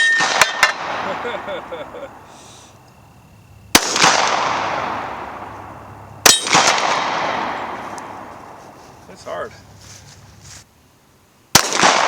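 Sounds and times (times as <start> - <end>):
pistol shots with echo: 0.0 - 1.5, 3.7 - 8.4, 11.6 - 12.0.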